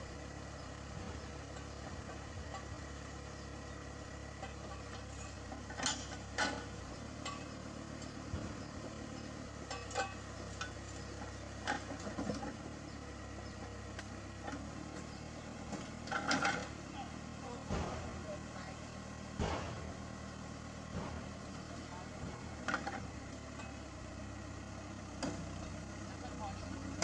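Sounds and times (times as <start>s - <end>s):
engine idling: 0.0s - 27.0s
metal clanks and knocks: 4.4s - 8.7s, 9.6s - 10.9s, 15.6s - 16.8s, 17.6s - 18.4s, 19.3s - 20.1s, 20.8s - 23.9s.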